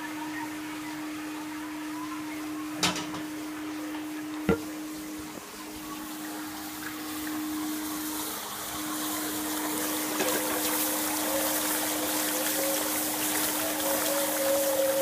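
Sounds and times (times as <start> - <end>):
hot steel sizzling in water: 3.2 - 15.0
thin whistle-like tone: 11.0 - 15.0.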